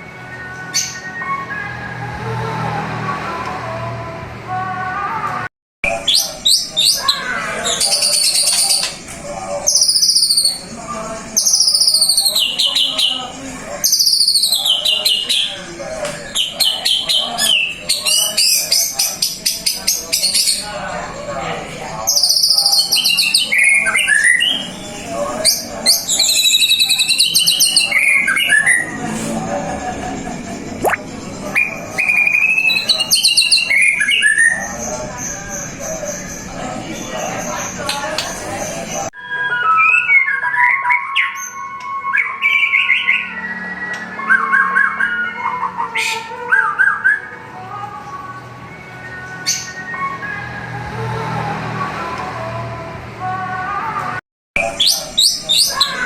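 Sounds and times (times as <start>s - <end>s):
songbird singing trills: 9.6s - 20.9s, 22.0s - 29.0s, 30.8s - 38.8s
bird singing whistles and trills: 9.7s - 10.7s, 11.3s - 13.2s, 13.8s - 15.5s, 22.1s - 29.0s, 30.8s - 34.8s, 39.2s - 47.3s.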